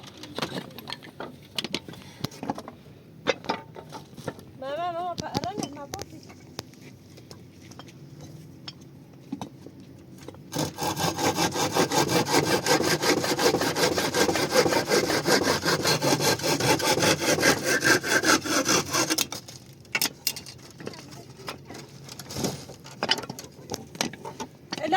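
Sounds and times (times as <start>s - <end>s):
hand saw cutting wood: 10.5s - 19.6s.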